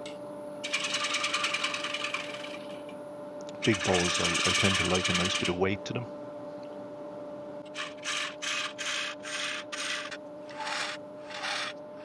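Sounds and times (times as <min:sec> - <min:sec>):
wood lathe humming: 0:00.7 - 0:02.7, 0:03.6 - 0:05.6, 0:07.7 - 0:11.8
scraper hissing on wood: 0:07.8 - 0:11.7.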